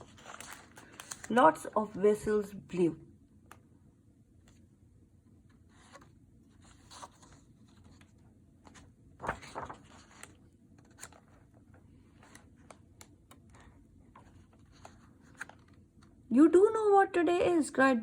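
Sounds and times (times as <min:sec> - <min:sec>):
book page turning: 0:00.0 - 0:02.2, 0:05.5 - 0:16.1.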